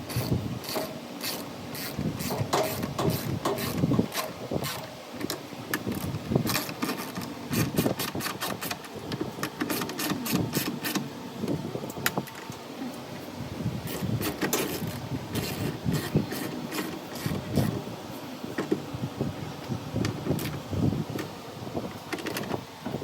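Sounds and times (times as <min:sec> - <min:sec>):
hand tools clicking and clattering: 0:00.1 - 0:11.1.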